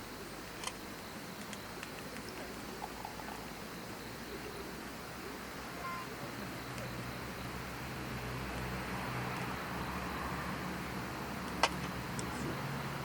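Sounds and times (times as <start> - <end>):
campfire crackling: 0.2 - 13.0.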